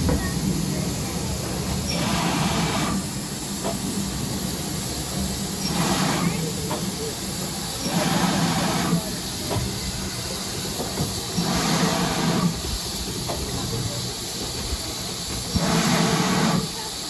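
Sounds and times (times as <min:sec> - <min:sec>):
steam hissing from locomotive: 0:00.0 - 0:17.0.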